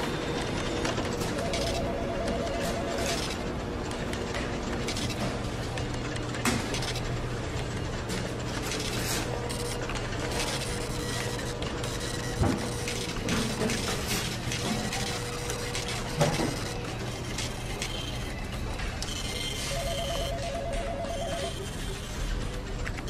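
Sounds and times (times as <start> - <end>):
printer running: 0.0 - 23.0
telephone ringing two-tone: 1.4 - 3.3, 19.3 - 21.9.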